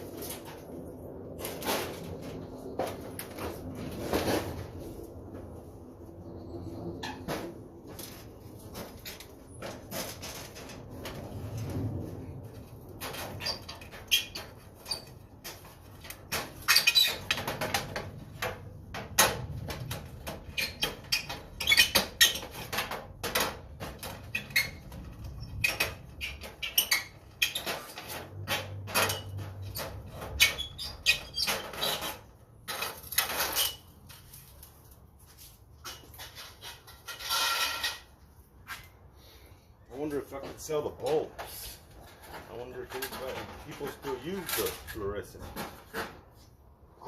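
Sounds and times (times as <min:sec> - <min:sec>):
metal parts clicking and scraping: 0:35.8 - 0:38.1.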